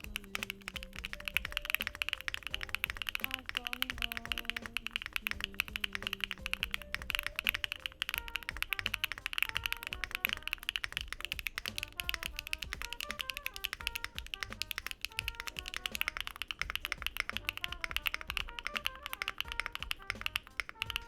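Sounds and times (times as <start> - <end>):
fast mechanical keyboard typing: 0.0 - 21.0
instrumental jazz music: 0.0 - 21.0.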